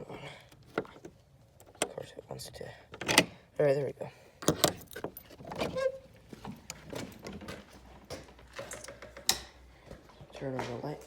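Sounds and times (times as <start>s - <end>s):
keys rattling: 4.4s - 5.7s, 8.4s - 9.4s
lock and door clicking: 4.4s - 5.7s.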